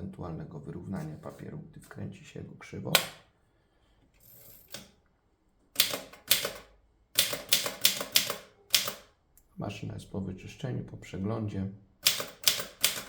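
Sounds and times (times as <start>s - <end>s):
typewriter key strikes: 5.8s - 9.1s, 12.0s - 13.0s.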